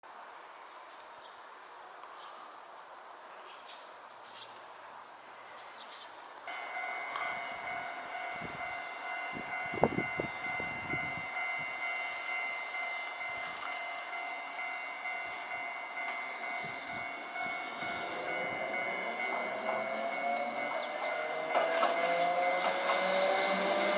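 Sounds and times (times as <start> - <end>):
level crossing ringing tone: 6.5 - 23.9
tram wheels clunking over rail: 15.0 - 23.9.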